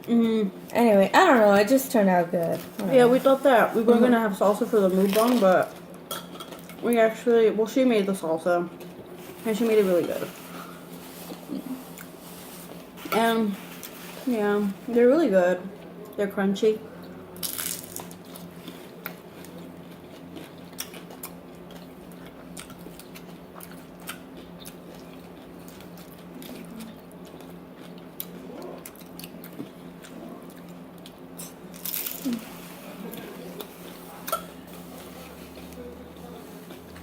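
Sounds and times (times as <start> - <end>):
crunchy food chewing: 17.4 - 37.0.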